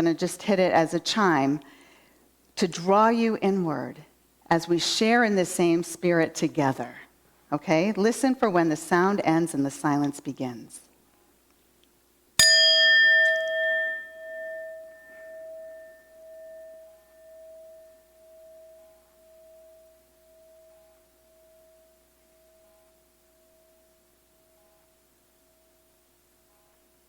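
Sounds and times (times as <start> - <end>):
singing bowl ringing: 12.4 - 24.6.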